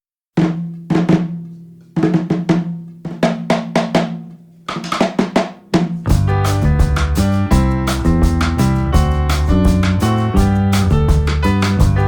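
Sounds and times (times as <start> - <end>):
drum hits: 2.0 - 12.0
band with guitar: 6.1 - 12.0.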